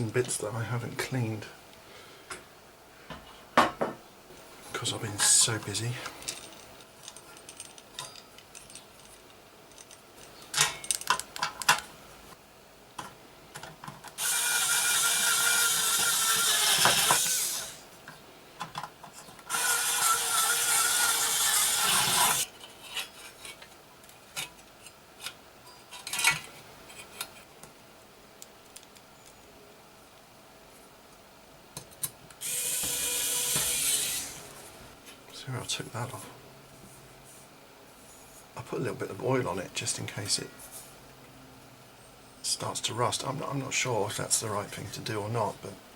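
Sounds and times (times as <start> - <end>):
clicks and knocks of tools: 6.0 - 11.9, 18.0 - 19.5, 22.6 - 27.8.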